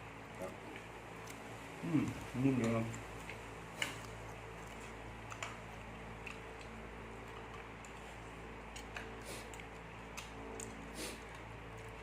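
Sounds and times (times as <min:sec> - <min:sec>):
low electrical hum: 0:00.0 - 0:12.0
chewing and utensil clicks: 0:00.3 - 0:12.0.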